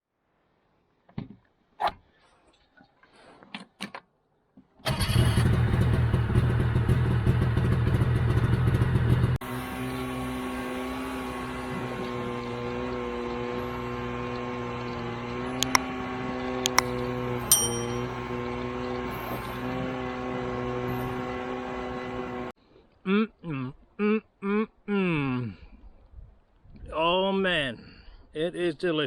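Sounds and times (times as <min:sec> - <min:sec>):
engine running hard: 0:04.9 - 0:22.5.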